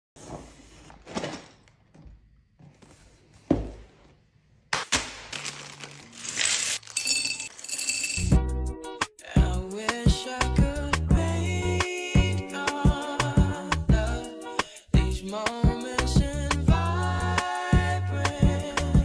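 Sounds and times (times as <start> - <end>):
plastic bricks clattering: 5.3 - 8.3.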